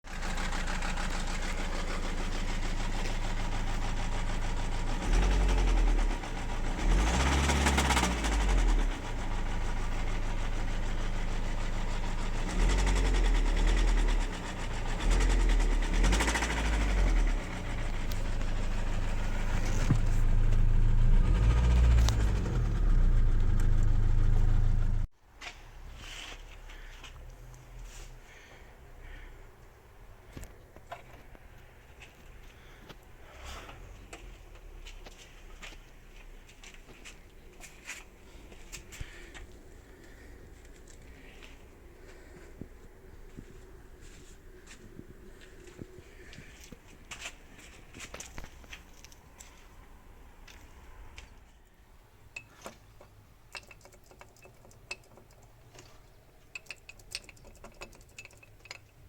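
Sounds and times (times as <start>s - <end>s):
diesel engine knocking revving: 0.1s - 25.1s.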